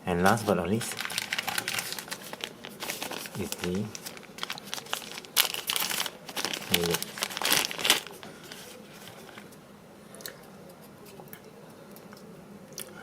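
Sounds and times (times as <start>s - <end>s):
plastic packaging crinkling: 0.2s - 9.5s.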